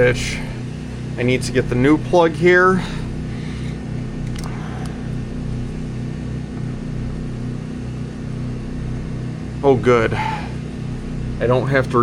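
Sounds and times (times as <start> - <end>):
pulsing motor hum: 0.0 - 12.0.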